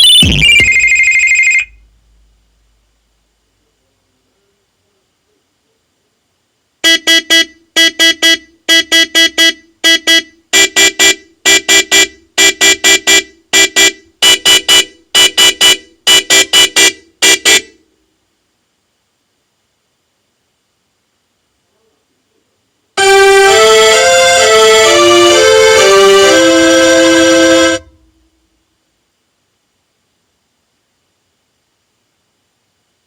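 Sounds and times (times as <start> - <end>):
buzzy electronic ringtone beeps: 0.0 - 1.8.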